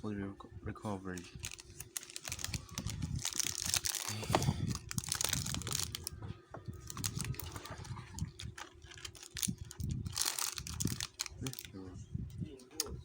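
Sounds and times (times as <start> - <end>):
plastic packaging crinkling: 1.2 - 6.2, 6.8 - 11.7.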